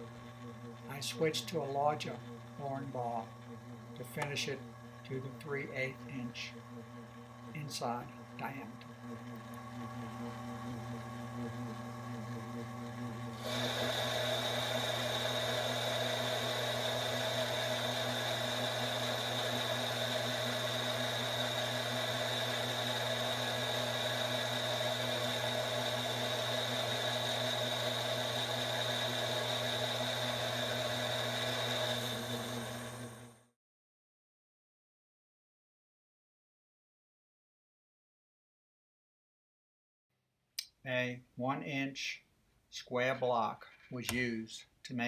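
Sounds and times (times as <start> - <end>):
lathe cutting with high whine: 0.0 - 33.3.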